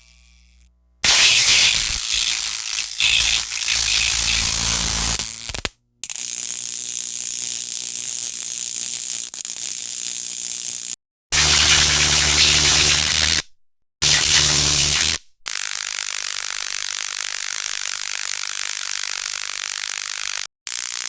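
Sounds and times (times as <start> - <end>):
stun gun crackling buzz: 0.0 - 7.6, 11.4 - 21.0.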